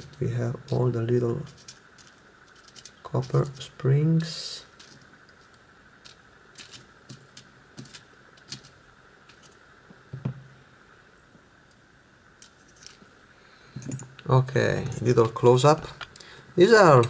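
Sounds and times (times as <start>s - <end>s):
small metal lock parts clicking: 1.5s - 3.0s, 4.8s - 9.6s.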